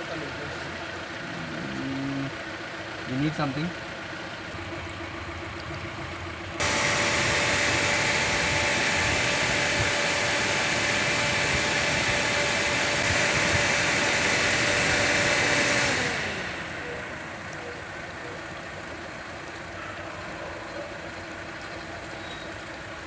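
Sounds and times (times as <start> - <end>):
car engine idling: 0.0 - 23.0
radiator fan whooshing: 4.4 - 19.2.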